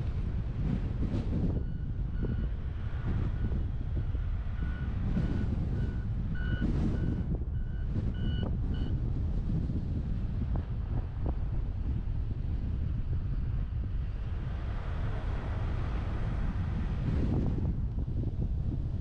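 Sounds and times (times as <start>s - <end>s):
wind rumble on microphone: 0.0s - 19.0s
reversing alarm beeping: 1.6s - 2.5s, 4.6s - 9.0s.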